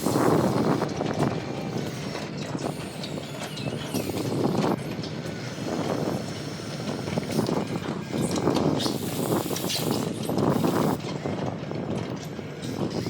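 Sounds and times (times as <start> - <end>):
faint squeals: 0.0 - 11.0
model excavator motors grinding: 0.0 - 13.0.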